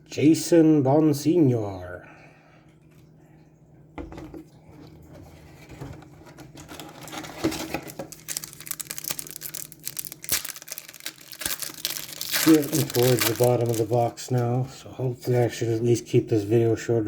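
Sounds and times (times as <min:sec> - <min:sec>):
cards and wrapper crinkling: 0:06.6 - 0:14.7.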